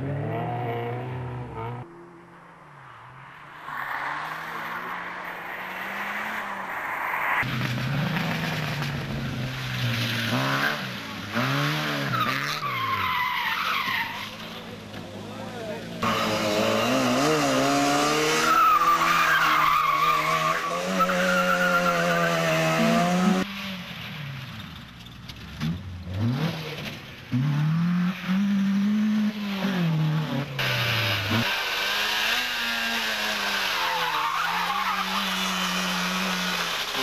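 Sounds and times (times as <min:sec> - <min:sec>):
rally car engines revving: 0:00.0 - 0:37.0
tyres squealing on loose ground: 0:11.7 - 0:14.7, 0:18.3 - 0:22.8, 0:33.4 - 0:37.0.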